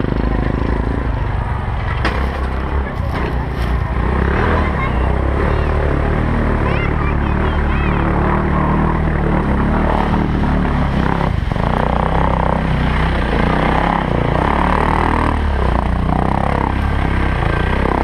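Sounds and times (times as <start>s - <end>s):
atv engine running: 0.0s - 18.0s.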